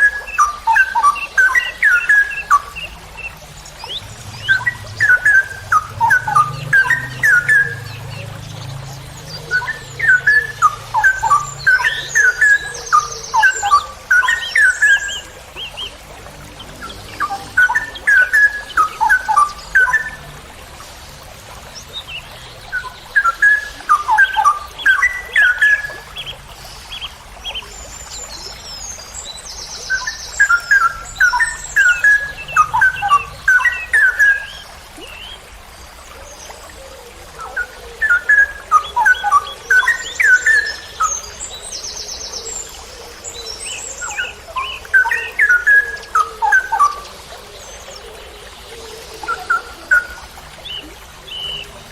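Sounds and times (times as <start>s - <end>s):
bird singing sliding notes: 0.0s - 20.2s.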